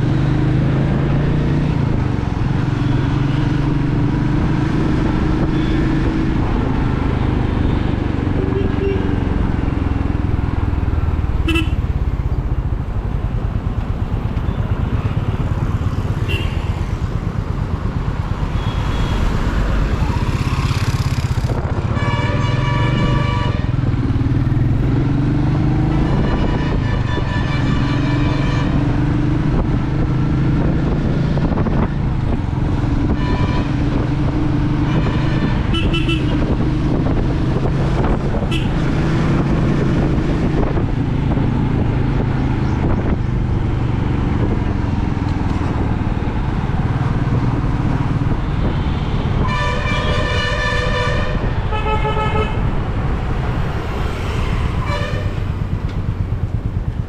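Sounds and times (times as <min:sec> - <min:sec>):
motorcycle engine running: 0:07.3 - 0:25.9, 0:52.5 - 0:57.0
vehicle horns honking: 0:08.4 - 0:09.3, 0:11.4 - 0:12.0, 0:16.1 - 0:16.9, 0:18.4 - 0:23.8, 0:25.9 - 0:28.9, 0:33.0 - 0:34.0, 0:34.9 - 0:36.6, 0:38.5 - 0:38.8, 0:48.6 - 0:52.8, 0:54.3 - 0:55.6.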